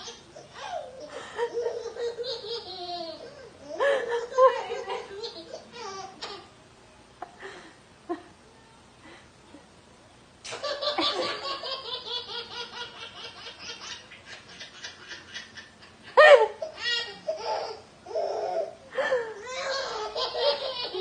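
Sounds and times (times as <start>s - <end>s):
baby laughing: 0.0s - 6.5s, 10.5s - 18.8s, 19.4s - 21.0s.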